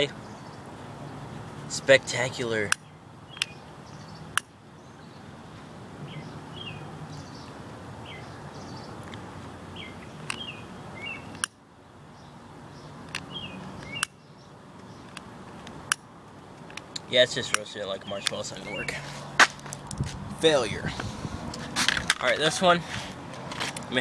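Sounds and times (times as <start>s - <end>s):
small birds chirping: 0.0s - 21.2s
steady outdoor hiss: 0.0s - 24.0s
sharp clicks: 11.3s - 11.6s.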